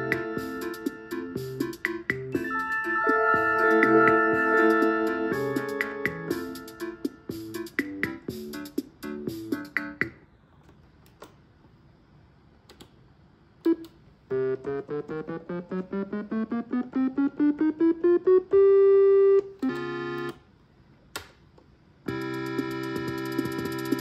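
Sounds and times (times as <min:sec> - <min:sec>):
electronic instrument notes: 0:00.0 - 0:10.0, 0:13.7 - 0:20.4, 0:22.1 - 0:24.0
electronic chords: 0:00.0 - 0:10.1, 0:14.3 - 0:20.4, 0:22.1 - 0:24.0.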